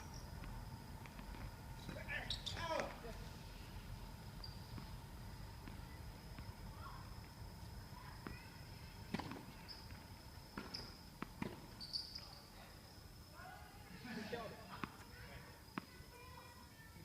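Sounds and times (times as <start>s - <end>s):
thin high whine: 0.0s - 17.0s
tennis ball hits and bounces: 9.1s - 9.6s, 10.5s - 11.7s.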